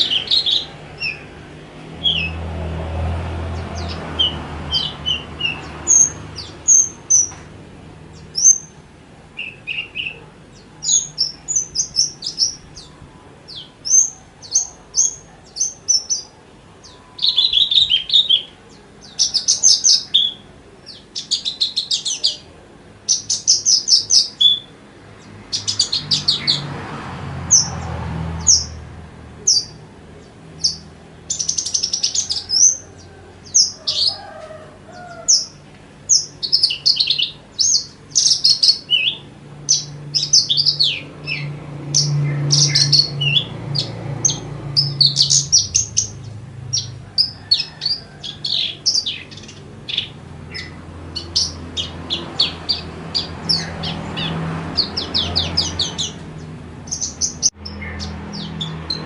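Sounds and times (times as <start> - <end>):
bird singing chirps and trills: 0.0 - 26.8, 27.4 - 59.0.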